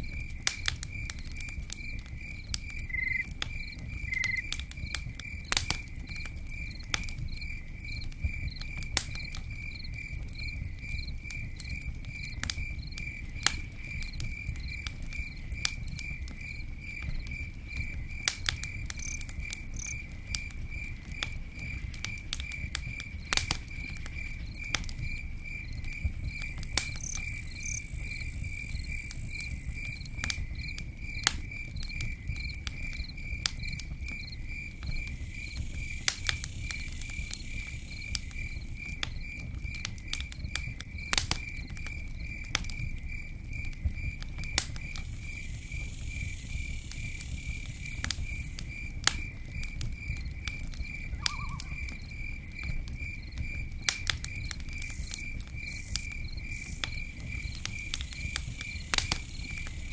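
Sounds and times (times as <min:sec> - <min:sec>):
campfire crackling and popping: 0:00.0 - 0:59.9
cricket chirping: 0:00.0 - 0:59.9.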